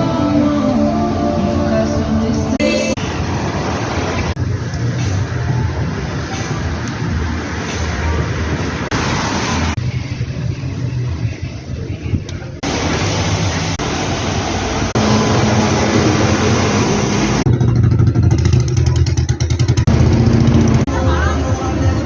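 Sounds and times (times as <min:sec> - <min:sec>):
vehicle engines running: 0:02.0 - 0:22.0
engine pulsing rumble: 0:09.7 - 0:21.1.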